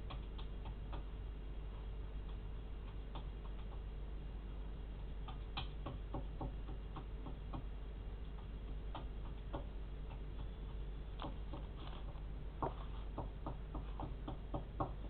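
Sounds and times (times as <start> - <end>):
steady low hum: 0.0 - 15.0
light clicks and taps: 1.8 - 3.9.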